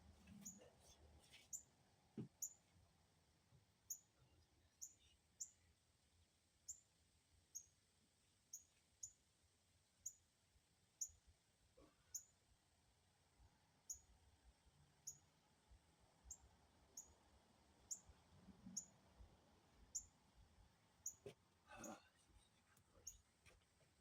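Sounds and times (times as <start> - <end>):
small bird chirping: 0.3 - 0.7, 1.4 - 1.7, 2.4 - 2.6, 3.9 - 5.7, 6.6 - 6.9, 7.5 - 9.2, 10.0 - 10.2, 11.0 - 11.2, 12.0 - 12.4, 13.8 - 14.1, 15.0 - 15.3, 16.2 - 17.2, 17.8 - 18.9, 19.9 - 20.2, 21.0 - 22.0, 22.9 - 23.3.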